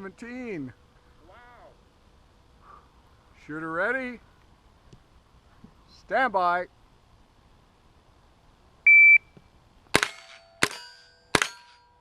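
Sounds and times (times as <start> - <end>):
shot timer beep: 8.9 - 9.3
rifle shots ringing: 9.9 - 12.0.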